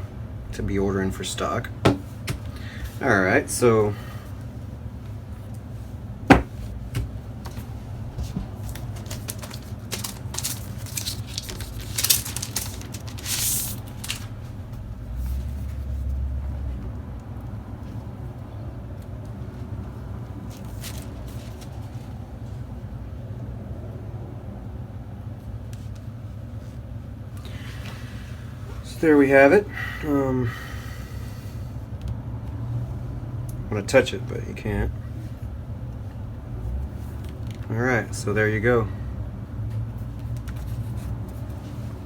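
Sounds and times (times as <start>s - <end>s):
steady low hum: 0.0s - 42.0s
sharp knock: 6.3s - 6.6s
packaging rustling and scraping: 7.5s - 14.5s.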